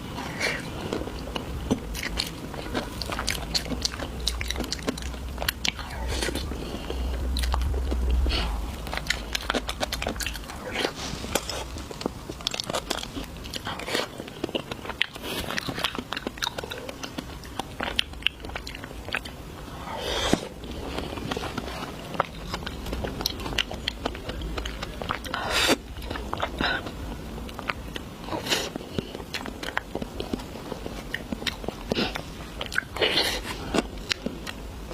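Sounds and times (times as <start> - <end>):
wet biting and chewing: 0.2 - 34.6
crunchy bites: 7.3 - 19.4.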